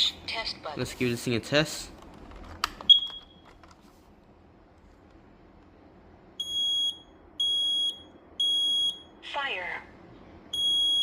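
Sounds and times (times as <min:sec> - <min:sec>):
smoke alarm high-pitched beep: 0:06.4 - 0:09.1, 0:10.5 - 0:11.0.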